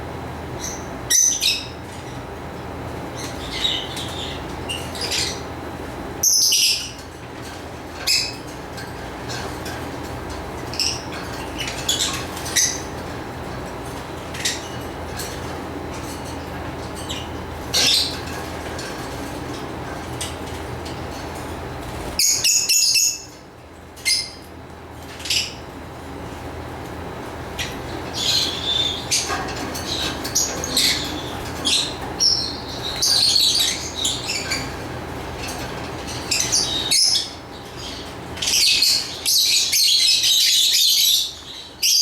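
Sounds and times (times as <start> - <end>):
steady background noise: 0.0 - 42.0
lovebirds chirping: 3.2 - 5.4, 27.6 - 34.8.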